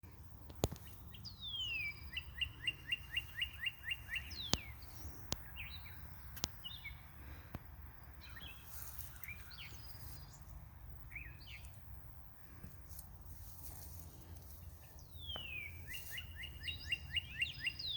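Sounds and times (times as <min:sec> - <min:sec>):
birds chirping: 0:00.1 - 0:17.9
bird whistling: 0:01.5 - 0:04.7, 0:15.3 - 0:17.9
sharp clicks: 0:06.3 - 0:06.6.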